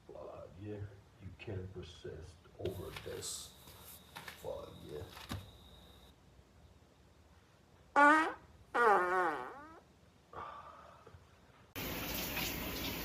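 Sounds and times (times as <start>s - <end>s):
steady hiss: 0.0s - 7.8s
tonal farts: 8.0s - 9.8s.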